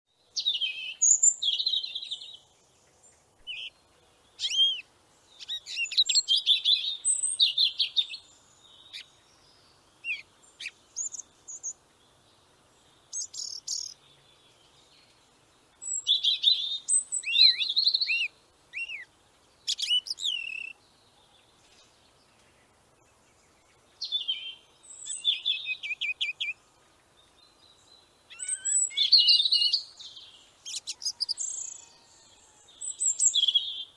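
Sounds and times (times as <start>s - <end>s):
songbird chirping and whistling: 0.4s - 2.4s, 3.4s - 3.7s, 4.4s - 9.1s, 15.8s - 19.1s, 19.7s - 20.8s, 24.0s - 26.6s, 28.3s - 33.9s.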